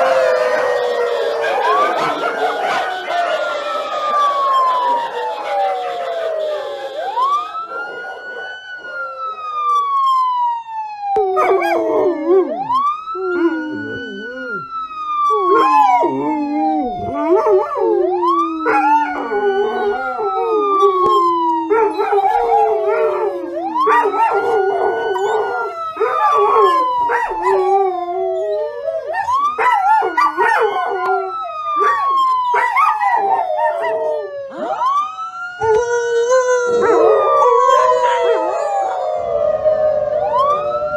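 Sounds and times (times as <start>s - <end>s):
dogs howling: 0.0s - 9.8s, 11.2s - 40.9s
emergency siren wailing: 0.0s - 40.9s.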